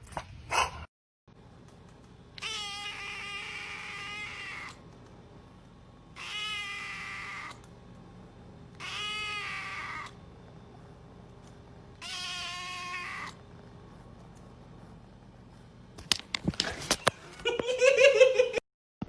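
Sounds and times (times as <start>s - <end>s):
cat meowing: 2.4s - 4.8s, 6.2s - 7.6s, 8.8s - 10.2s, 12.0s - 13.4s.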